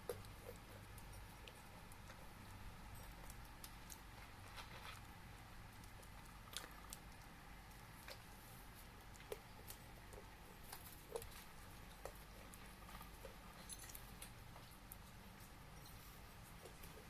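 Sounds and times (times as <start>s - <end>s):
low steady hum: 0.0s - 17.0s
dog chewing on sticks: 5.7s - 15.2s.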